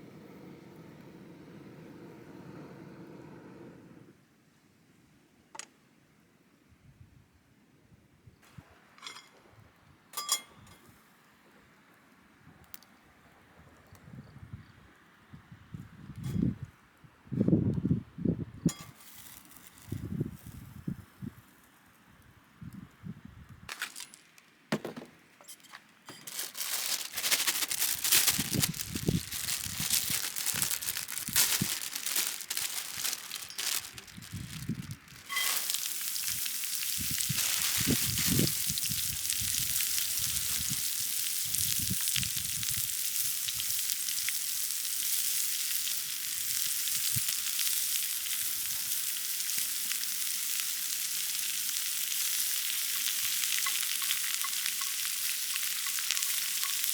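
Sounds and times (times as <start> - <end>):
loud steady sizzle: 0.0 - 4.2, 18.7 - 23.2, 26.2 - 56.9
food crackling in a pan: 18.7 - 22.0, 26.1 - 56.9.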